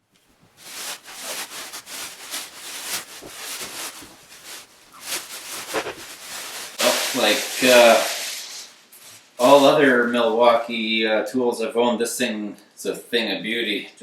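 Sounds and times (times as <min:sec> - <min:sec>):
cardboard packaging rustling: 0:00.2 - 0:08.5.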